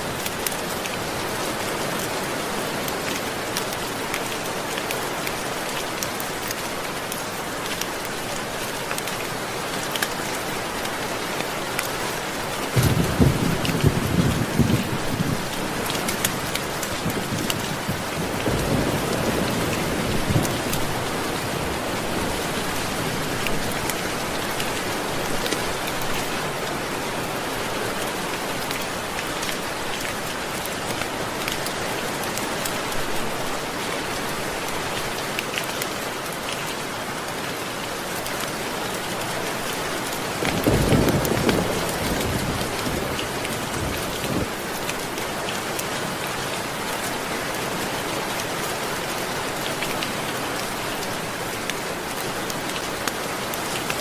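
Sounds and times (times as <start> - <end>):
heavy rainfall: 0.0 - 54.0
thunder rumbling: 12.8 - 15.6, 40.6 - 44.5.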